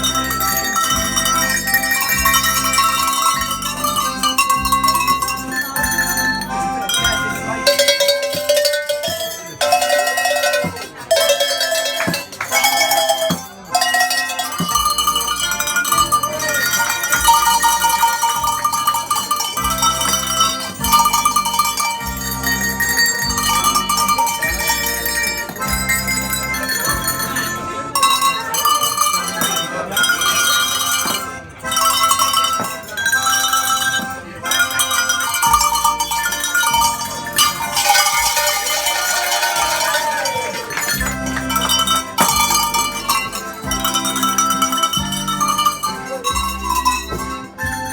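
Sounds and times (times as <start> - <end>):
low bass held notes: 0.0 - 8.0, 14.8 - 28.1, 39.2 - 47.9
cowbells playing a tune: 0.0 - 47.9.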